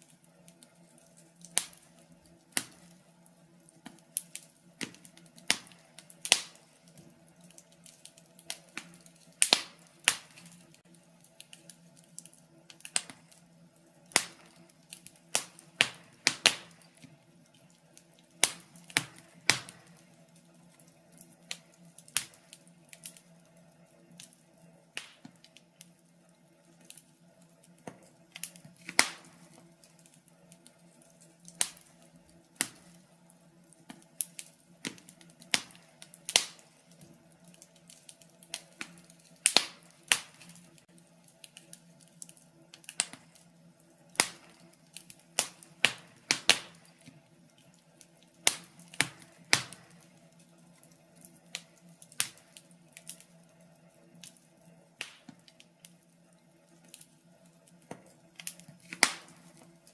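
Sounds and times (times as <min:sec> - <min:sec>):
wood fire crackling: 0:00.0 - 0:59.9.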